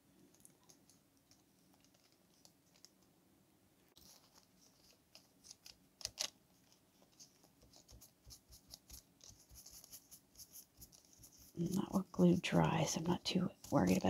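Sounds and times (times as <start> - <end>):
paper rustling and clicks: 0.4 - 3.1, 3.9 - 10.0.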